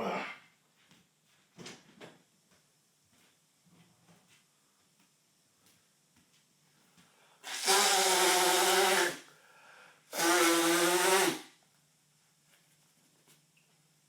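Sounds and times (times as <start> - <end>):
breath: 7.0 - 7.5, 9.3 - 10.1
man blowing his nose: 7.4 - 9.3, 10.1 - 11.5.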